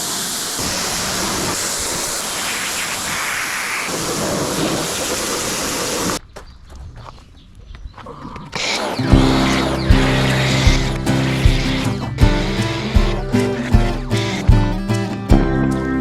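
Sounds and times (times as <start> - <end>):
pressure washer spraying water: 0.0 - 6.2, 8.7 - 15.0.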